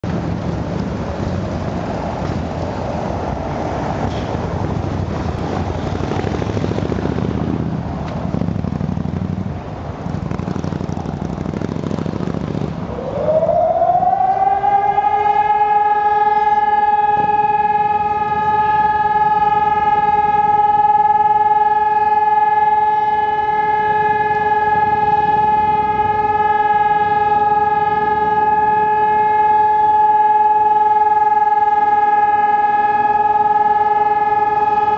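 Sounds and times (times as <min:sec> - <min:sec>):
city square background noise: 0:00.0 - 0:34.9
warning siren steady tone: 0:12.8 - 0:34.9.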